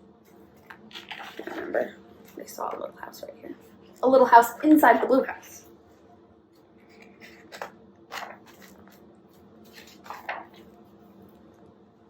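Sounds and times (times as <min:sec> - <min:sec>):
picture book page rustling: 0:00.6 - 0:02.6, 0:06.8 - 0:11.1.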